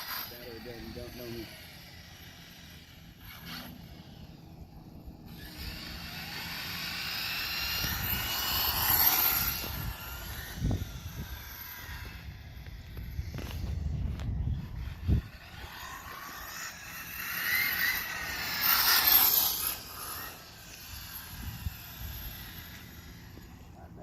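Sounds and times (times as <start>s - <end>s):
rc truck motor whining: 0.0s - 24.0s.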